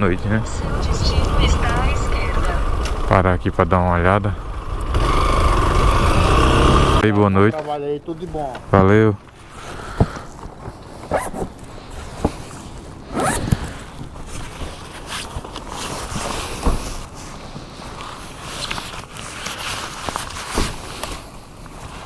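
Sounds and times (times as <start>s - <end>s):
rustling: 9.2s - 22.0s
zipper being pulled: 11.1s - 11.5s, 13.1s - 13.8s.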